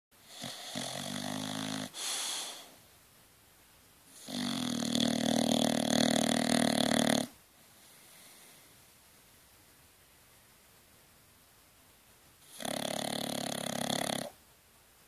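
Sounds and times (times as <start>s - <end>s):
dog snoring: 0.2s - 2.8s, 4.1s - 8.6s, 12.4s - 14.4s
dog short breath: 1.9s - 2.8s.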